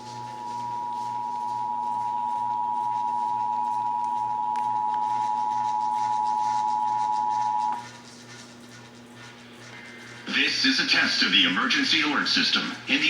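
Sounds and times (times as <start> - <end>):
two-tone alert signal: 0.4 - 7.8.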